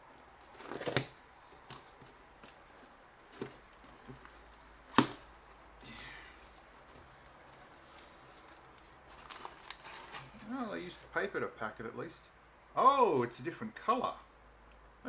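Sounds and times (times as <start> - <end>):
cardboard box tearing: 0.5 - 1.2
cardboard snap: 4.9 - 5.2.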